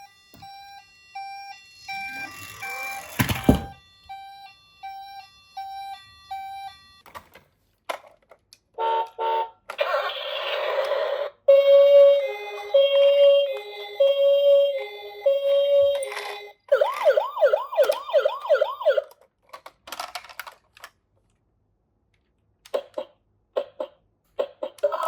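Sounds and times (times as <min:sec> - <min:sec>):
two-tone toy siren: 0:00.0 - 0:07.0, 0:08.8 - 0:19.2, 0:24.5 - 0:25.0.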